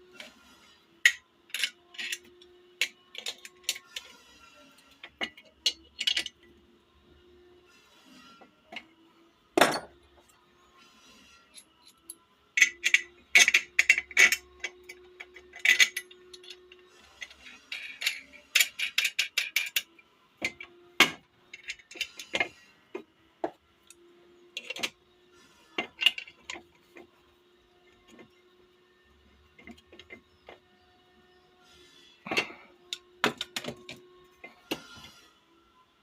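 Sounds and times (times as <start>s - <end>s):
metal nuts clinking: 11.5s - 19.9s.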